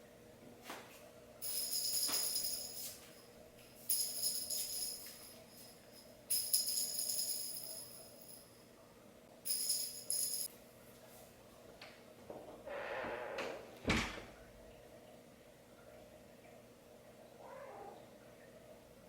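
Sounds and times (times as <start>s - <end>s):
metallic jingling: 1.4s - 8.5s, 9.5s - 10.5s.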